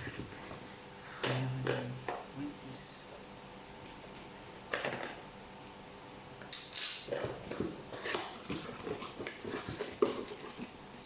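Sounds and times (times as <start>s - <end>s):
cardboard crackling and scraping: 7.1s - 11.0s.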